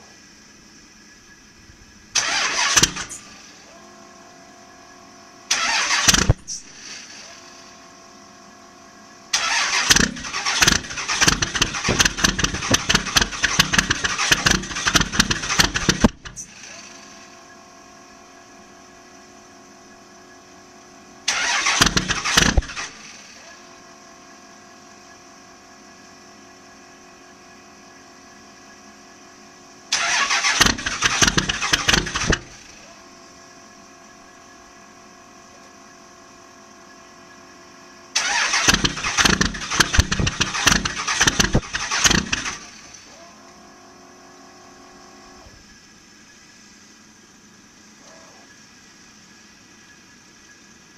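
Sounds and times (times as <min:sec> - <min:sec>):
diesel engine cranking: 0:02.2 - 0:03.5, 0:05.5 - 0:07.4, 0:09.3 - 0:17.1, 0:21.2 - 0:23.4, 0:29.9 - 0:32.9, 0:38.1 - 0:43.2.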